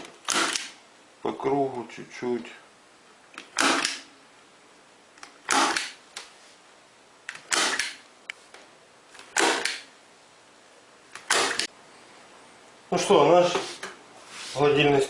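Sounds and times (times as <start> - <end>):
staple gun snaps: 3.4 - 4.1, 5.2 - 6.0, 7.3 - 8.0, 9.4 - 9.9.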